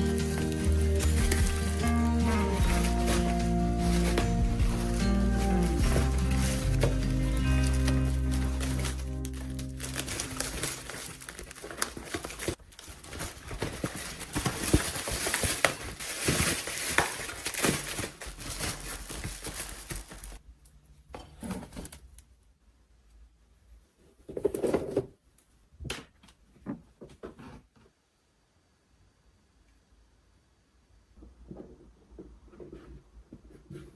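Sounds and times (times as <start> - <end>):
plastic packaging crinkling: 0.0 - 20.4.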